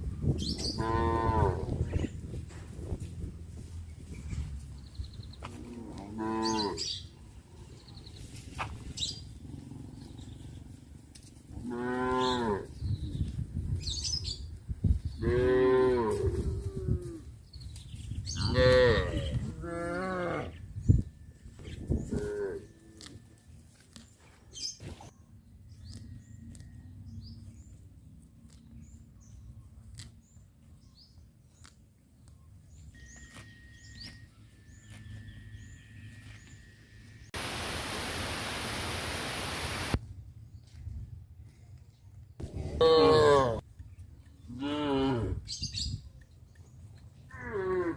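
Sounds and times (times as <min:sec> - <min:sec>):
cattle mooing: 0:05.6 - 0:06.9.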